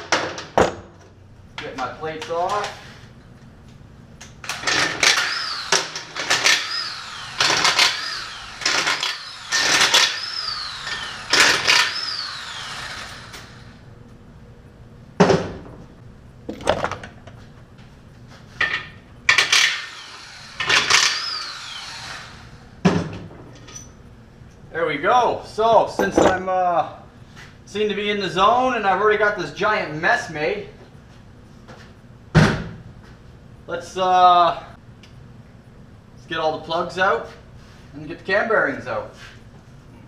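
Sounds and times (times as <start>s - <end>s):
impact wrench zipping bolts: 4.4s - 13.6s, 19.3s - 21.6s.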